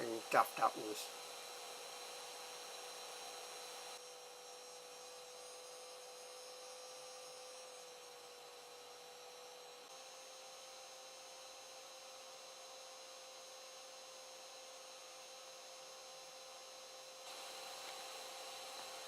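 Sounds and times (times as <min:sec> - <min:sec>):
light hiss: 0:17.3 - 0:19.0.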